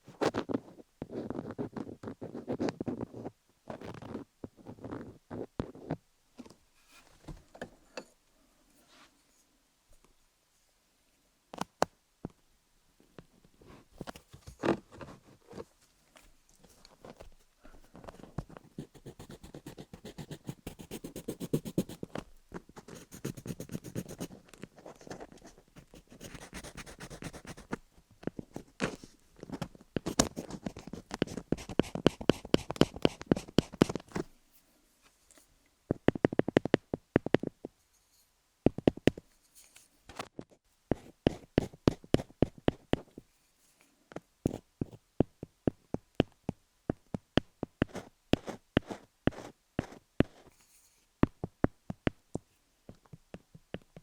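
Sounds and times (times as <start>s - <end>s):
pencil scribbling on wood: 25.8s - 27.7s, 30.8s - 34.0s.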